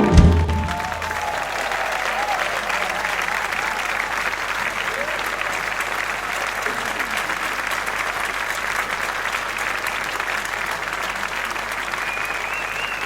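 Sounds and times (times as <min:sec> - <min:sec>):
audience applauding: 0:00.0 - 0:13.0.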